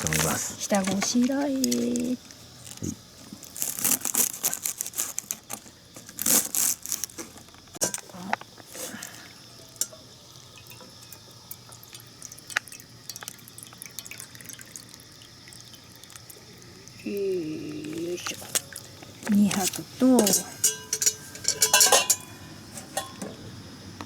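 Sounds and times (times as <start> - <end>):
vessels clinking: 17.7 - 23.4
water splashing into cookware: 18.0 - 23.3.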